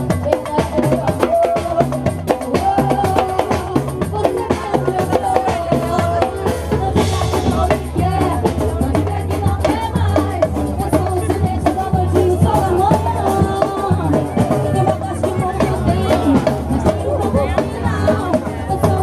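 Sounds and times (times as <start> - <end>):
deep bass drums: 0.0 - 19.0.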